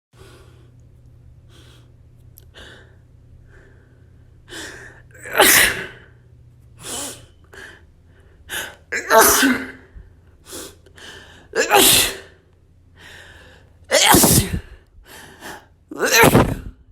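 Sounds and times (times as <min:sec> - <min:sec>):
person sneezing loudly: 0:05.2 - 0:06.0, 0:09.0 - 0:09.9, 0:11.6 - 0:12.4, 0:13.9 - 0:14.8, 0:15.9 - 0:16.8.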